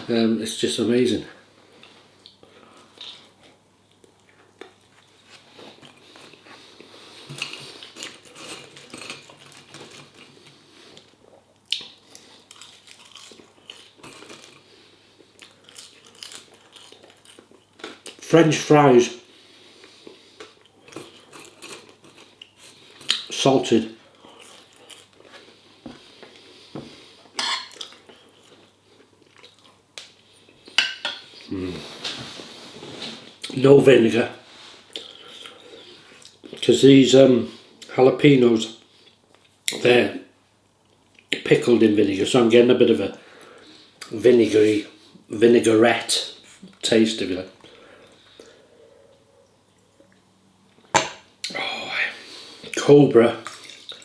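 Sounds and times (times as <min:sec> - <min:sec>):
person chewing food: 0:01.8 - 0:18.2, 0:19.7 - 0:23.3, 0:24.1 - 0:31.9, 0:34.9 - 0:36.6, 0:53.4 - 0:54.0
cutlery clinking on crockery: 0:27.4 - 0:27.8
cutlery scraping: 0:27.4 - 0:27.8.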